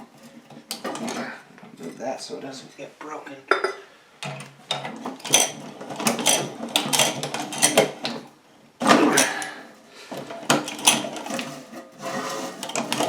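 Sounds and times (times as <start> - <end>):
plastic cracking in meat grinder: 4.9 - 9.5, 10.2 - 13.0.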